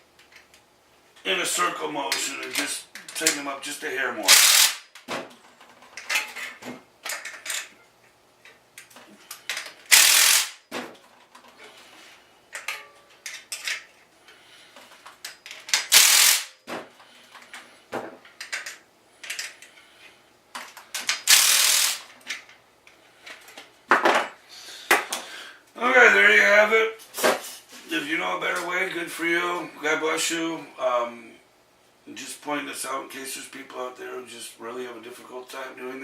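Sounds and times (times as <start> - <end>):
ratchet wrench clicking: 4.3 - 4.9, 9.5 - 10.6, 15.6 - 16.6, 21.1 - 22.1.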